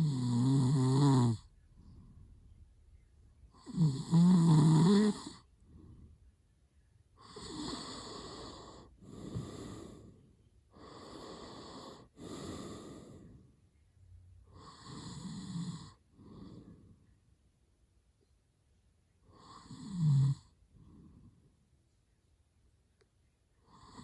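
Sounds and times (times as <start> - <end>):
man snoring: 0.0 - 1.4, 3.6 - 5.4, 7.2 - 10.1, 10.8 - 13.2, 14.6 - 16.0, 19.4 - 20.5.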